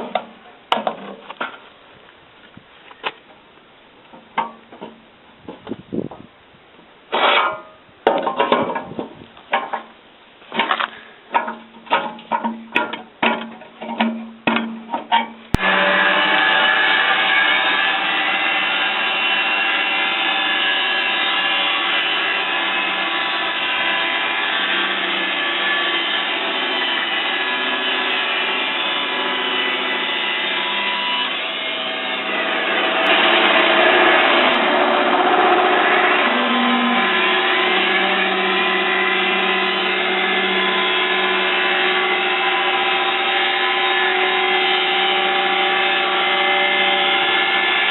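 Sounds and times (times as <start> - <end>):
band saw cutting log: 15.5 - 47.9.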